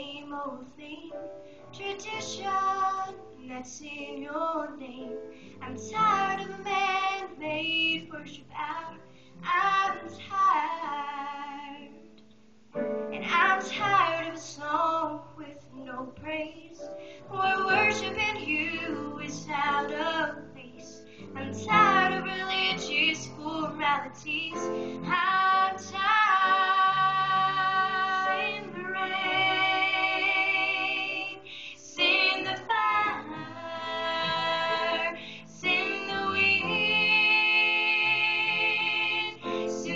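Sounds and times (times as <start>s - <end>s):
woman singing slow song: 0.0s - 12.0s, 13.2s - 29.7s.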